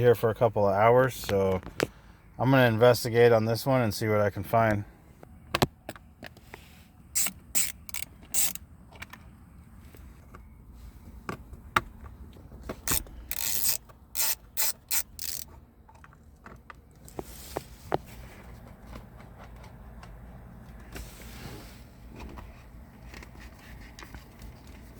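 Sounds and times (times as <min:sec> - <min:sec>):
hand ratchet clicking: 0:07.2 - 0:08.6, 0:12.9 - 0:15.5
tools clicking and knocking: 0:07.2 - 0:09.2, 0:12.6 - 0:16.8.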